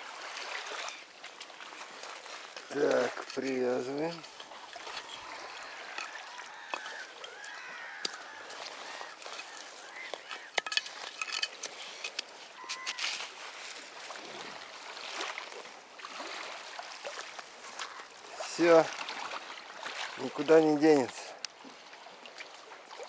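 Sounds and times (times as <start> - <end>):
water lapping and sloshing: 0.0 - 23.0
short bird calls: 4.9 - 10.6, 12.6 - 13.1
fishing tackle clicks and knocks: 9.2 - 13.2.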